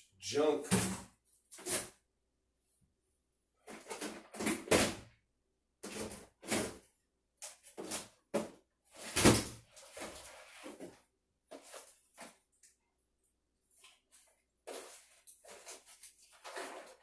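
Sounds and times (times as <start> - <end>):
rummaging through household junk: 14.1 - 17.0.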